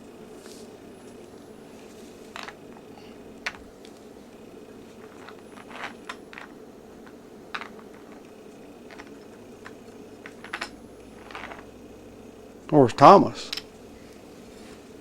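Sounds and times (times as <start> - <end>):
low room hum: 0.0 - 15.0
toy trains clicking together: 5.0 - 11.7.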